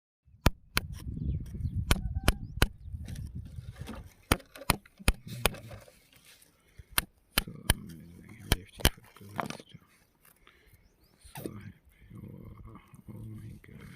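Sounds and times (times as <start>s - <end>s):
sharp knocks on rock: 3.8s - 5.7s.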